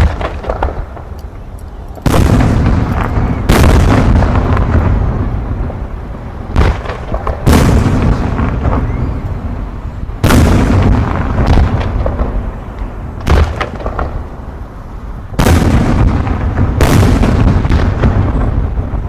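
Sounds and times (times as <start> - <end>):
crackling pops: 0.0 - 4.7, 10.2 - 14.3
fireworks shells booming: 0.0 - 14.6, 15.3 - 19.0.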